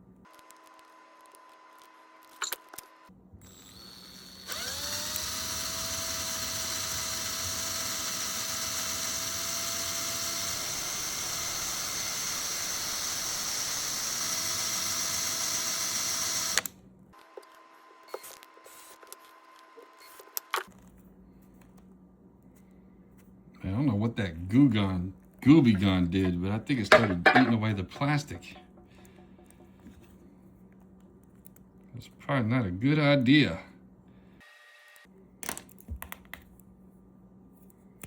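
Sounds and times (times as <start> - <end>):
small power drill motor running: 0.3 - 16.7, 34.4 - 35.1
drill clicks: 0.3 - 19.2.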